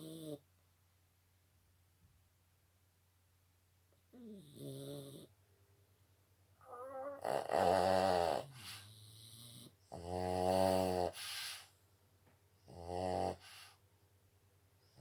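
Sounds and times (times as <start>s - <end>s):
dog snoring: 0.0s - 0.4s, 4.1s - 5.3s, 6.6s - 11.7s, 12.6s - 13.8s.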